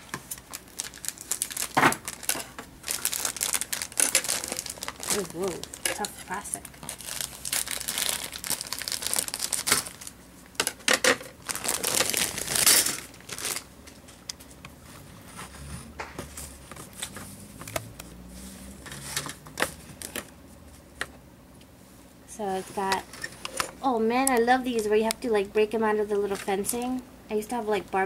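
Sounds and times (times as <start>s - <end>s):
plastic bag crinkling: 0.0s - 14.2s.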